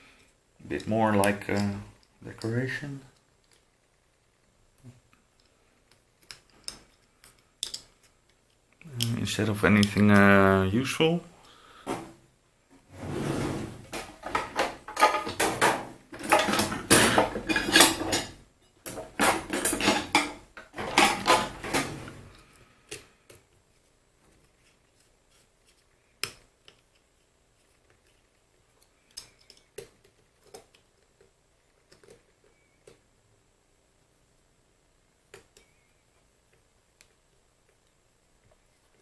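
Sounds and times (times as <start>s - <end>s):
metal parts clattering: 14.2s - 18.4s.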